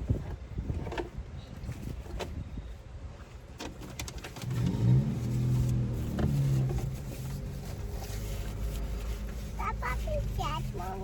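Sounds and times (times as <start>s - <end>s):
vehicle engine revving: 4.4s - 11.0s.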